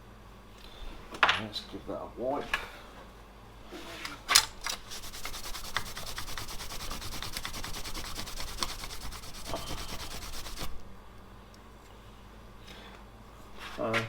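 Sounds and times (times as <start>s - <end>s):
cloth rubbing on steel plate: 4.8s - 10.8s.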